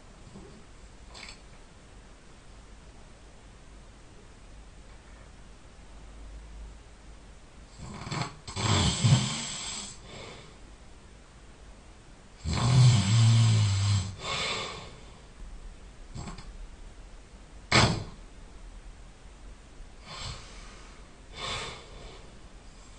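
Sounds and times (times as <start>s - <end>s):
person snoring loudly: 7.8s - 10.0s, 12.4s - 15.0s.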